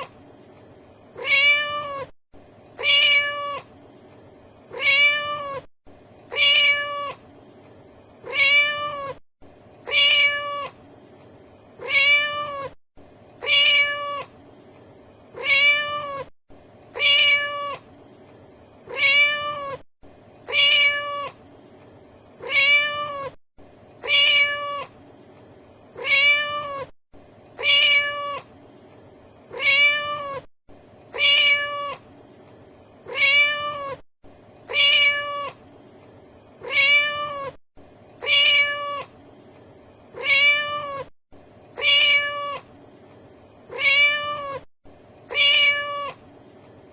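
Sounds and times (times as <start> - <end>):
cat meowing: 1.2 - 2.1, 2.8 - 3.7, 4.7 - 5.7, 6.3 - 7.2, 8.2 - 9.2, 9.8 - 10.8, 11.8 - 12.8, 13.4 - 14.3, 15.4 - 16.3, 17.0 - 17.8, 18.9 - 19.8, 20.5 - 21.4, 22.4 - 23.4, 24.0 - 24.9, 26.0 - 26.9, 27.6 - 28.5, 29.5 - 30.5, 31.1 - 32.0, 33.1 - 34.0, 34.7 - 35.6, 36.6 - 37.6, 38.2 - 39.1, 40.2 - 41.1, 41.8 - 42.7, 43.7 - 44.7, 45.3 - 46.2.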